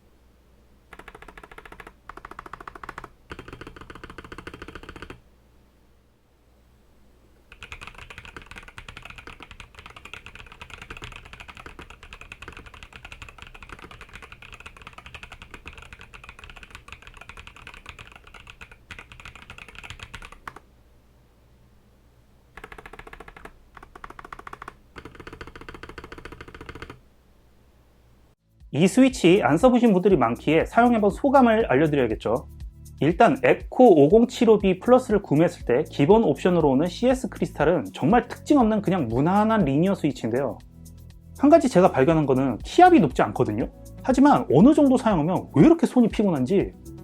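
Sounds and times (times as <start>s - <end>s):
mechanical keyboard typing: 0.9s - 5.2s, 7.5s - 20.6s, 22.6s - 27.0s.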